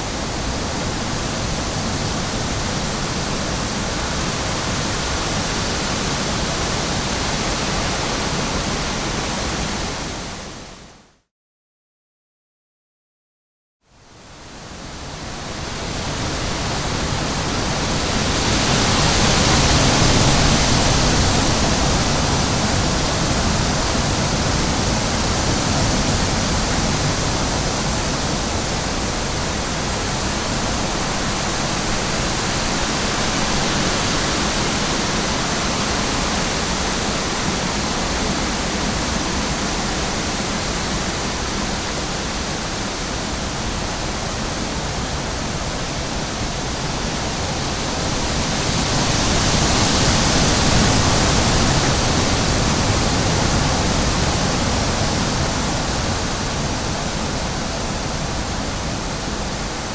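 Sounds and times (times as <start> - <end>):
falling water rushing: 15.5 - 59.9.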